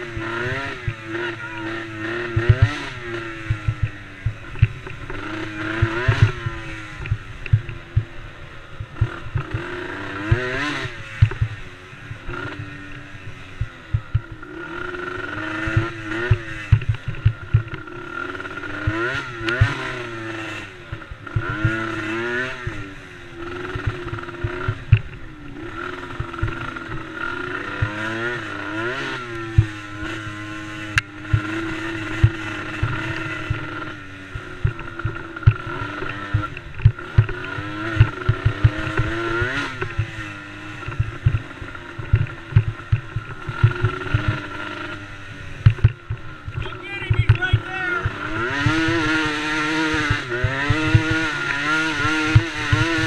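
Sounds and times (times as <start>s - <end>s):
quad engine revving: 0.0s - 53.0s.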